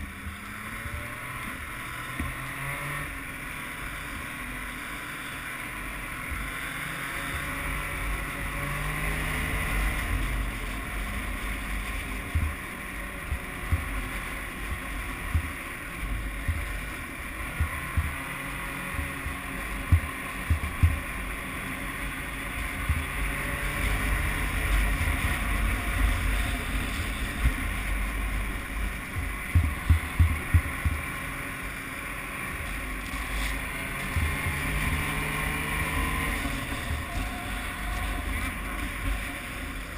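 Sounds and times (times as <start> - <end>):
snowmobile engine running: 0.0 - 39.9
short low thumps: 14.7 - 15.8, 17.5 - 18.2, 18.9 - 21.1, 28.6 - 31.1.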